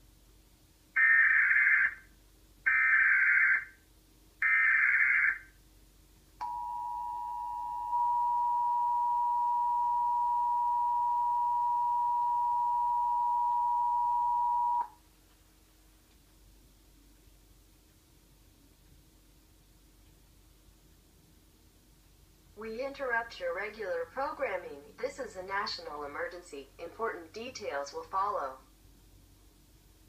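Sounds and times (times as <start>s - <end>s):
two-tone attention signal: 6.4s - 14.9s.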